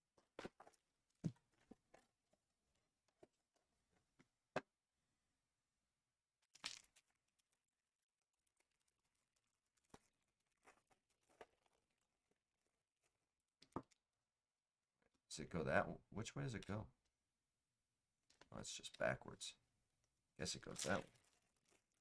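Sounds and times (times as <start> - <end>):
wrapper tearing and crinkling: 20.7 - 22.0.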